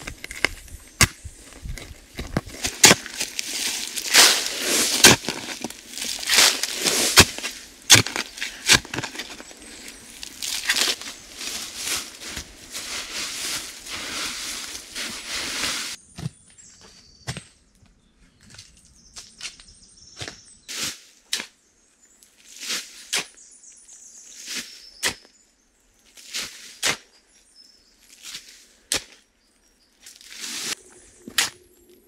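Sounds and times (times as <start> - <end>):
branches knocking and cracking: 0.0 - 16.0
scraping and crunching on forest floor: 0.0 - 17.5, 18.4 - 25.3, 26.0 - 32.0.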